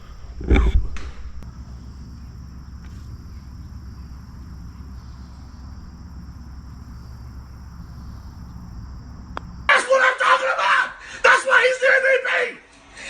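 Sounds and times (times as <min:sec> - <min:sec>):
wind rumbling on microphone: 0:00.0 - 0:09.7
insect chirring: 0:00.0 - 0:12.7.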